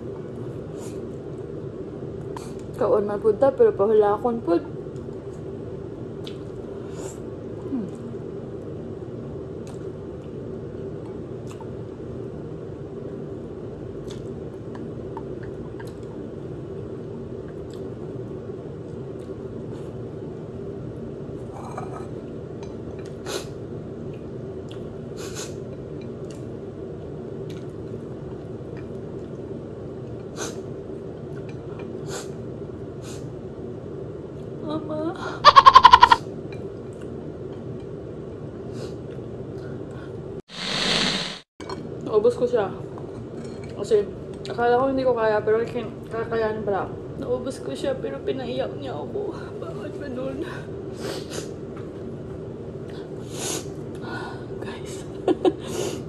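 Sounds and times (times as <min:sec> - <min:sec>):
steady background hum: 0:00.0 - 0:56.0
chewing and mouth sounds: 0:06.2 - 0:06.6, 0:11.4 - 0:11.8, 0:14.0 - 0:16.1, 0:24.1 - 0:24.9.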